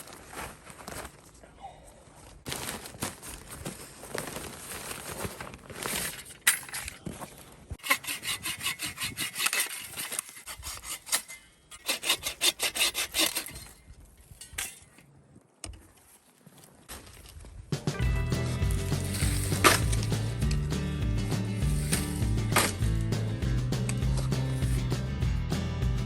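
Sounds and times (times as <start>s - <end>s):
rough scraping: 2.4s - 15.1s, 15.8s - 25.0s
hand saw cutting wood: 7.8s - 13.8s, 18.8s - 20.4s, 21.5s - 22.9s, 24.0s - 24.9s.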